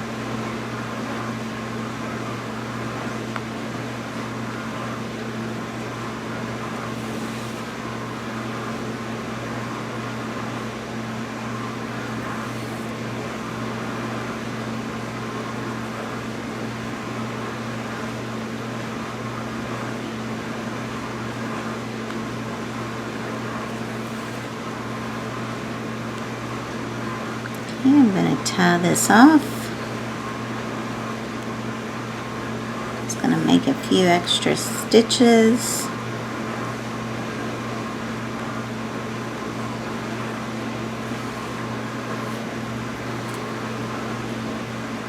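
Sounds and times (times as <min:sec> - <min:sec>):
fan humming and hissing: 0:00.0 - 0:45.0.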